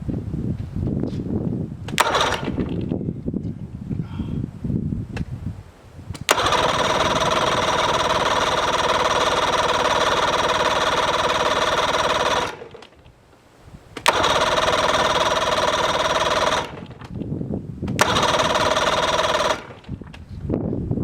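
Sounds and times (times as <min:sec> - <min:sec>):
outboard starter cranking: 0:01.9 - 0:03.0, 0:06.2 - 0:13.1, 0:14.0 - 0:17.3, 0:17.9 - 0:20.2
starter click: 0:01.9 - 0:03.0, 0:06.2 - 0:13.1, 0:14.0 - 0:17.3, 0:17.9 - 0:20.3.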